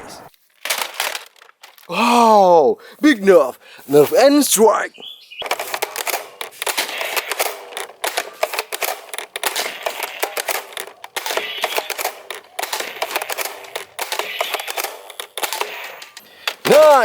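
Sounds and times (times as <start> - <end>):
plastic toy blasters clicking: 0.6 - 1.9, 5.4 - 17.0.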